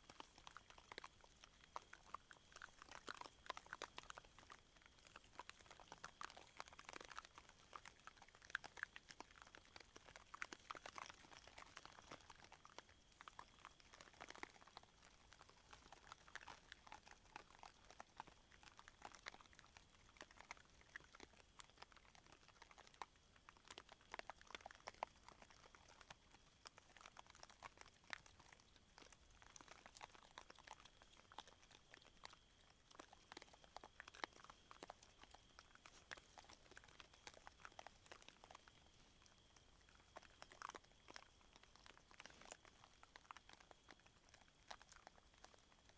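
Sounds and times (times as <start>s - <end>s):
boar crunching corn kernels: 0.0s - 45.9s.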